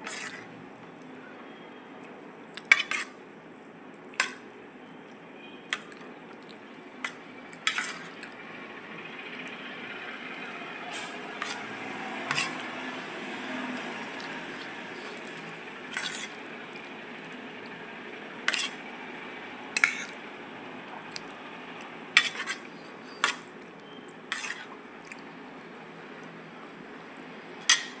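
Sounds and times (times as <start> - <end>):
cutlery clinking against dishes: 2.6 - 3.1, 12.3 - 12.6, 19.8 - 20.2, 22.2 - 23.5, 27.6 - 28.0.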